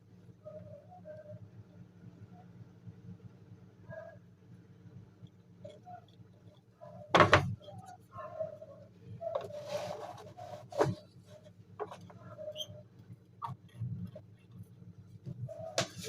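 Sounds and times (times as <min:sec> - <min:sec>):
parts knocking on work surface: 0:07.2 - 0:07.5.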